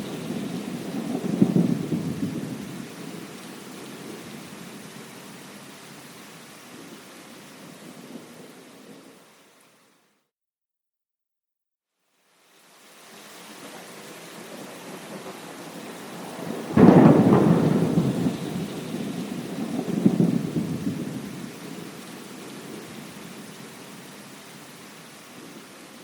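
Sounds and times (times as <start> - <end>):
thunder rumbling: 0.0 - 4.3, 14.4 - 23.6
steady rain: 0.0 - 10.2, 12.0 - 26.0.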